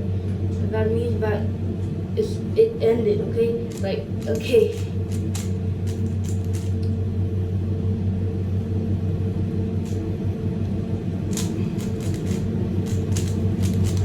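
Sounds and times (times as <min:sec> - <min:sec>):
air conditioner hum: 0:00.0 - 0:14.0
puzzle cube clicks: 0:03.7 - 0:06.9, 0:11.3 - 0:14.0.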